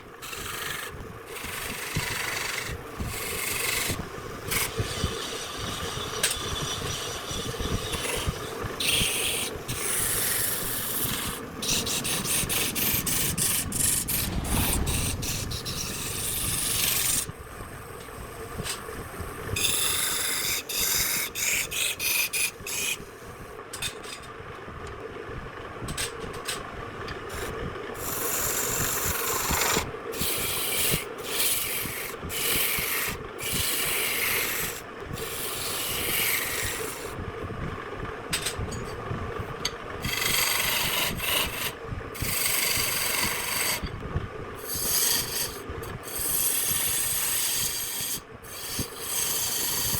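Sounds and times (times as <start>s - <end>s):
wood scraping on a lathe: 0.2s - 14.4s, 19.6s - 23.0s, 28.1s - 37.2s, 40.0s - 43.9s, 44.6s - 49.9s.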